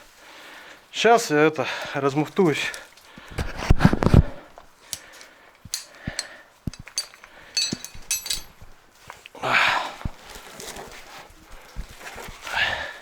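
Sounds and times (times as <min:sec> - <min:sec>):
metal carabiners clinking: 0:04.9 - 0:08.6.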